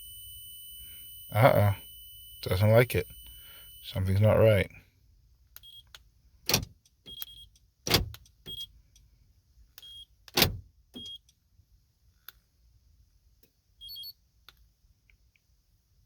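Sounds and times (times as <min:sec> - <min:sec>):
double chirp: 0:00.0 - 0:04.3.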